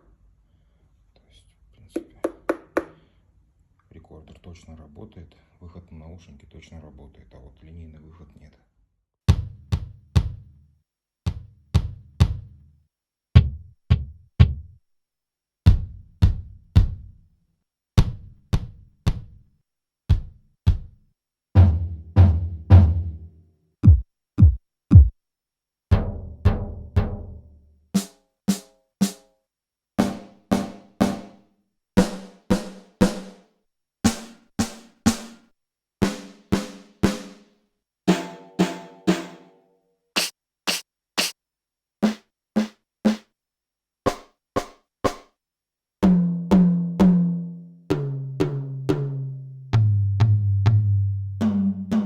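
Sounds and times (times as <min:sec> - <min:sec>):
electronic drum hits: 0:23.8 - 0:25.1.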